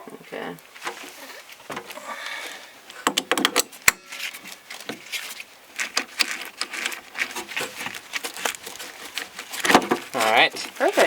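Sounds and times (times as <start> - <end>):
hard objects clattering: 2.9 - 11.0.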